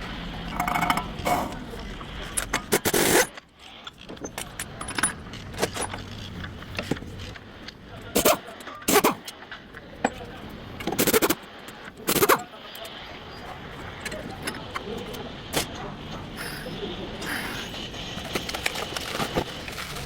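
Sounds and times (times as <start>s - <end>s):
metal tools clinking and knocking: 0.5s - 6.2s.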